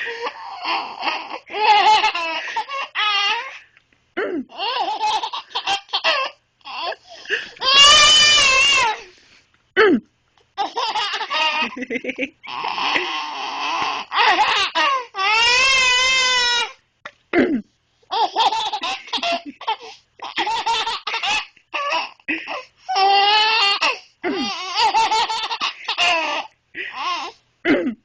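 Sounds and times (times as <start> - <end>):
baby laughing: 0.0 - 3.6, 4.5 - 9.1, 10.6 - 16.7, 18.1 - 27.4
woman clearing her throat: 4.2 - 4.5, 9.8 - 10.1, 17.3 - 17.7, 27.6 - 28.0.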